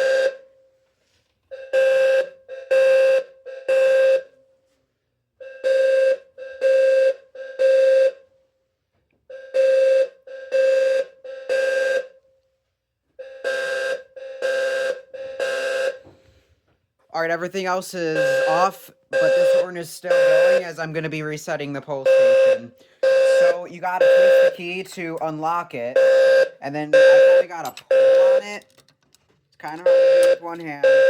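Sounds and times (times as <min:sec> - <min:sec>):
low fire alarm horn tones: 0:00.0 - 0:00.8, 0:01.5 - 0:04.7, 0:05.4 - 0:08.3, 0:09.3 - 0:12.2, 0:13.2 - 0:16.2, 0:18.1 - 0:21.0, 0:22.0 - 0:28.6, 0:29.7 - 0:31.0.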